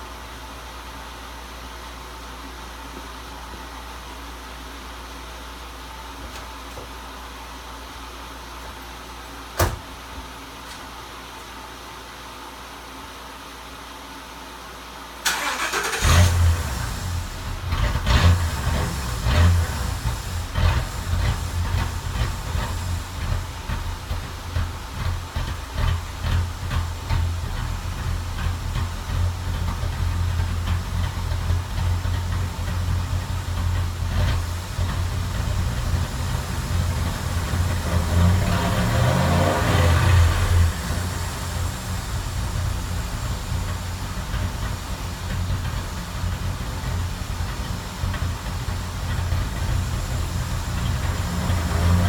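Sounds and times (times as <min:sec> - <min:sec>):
engine low rumble: 0:15.2 - 0:52.0.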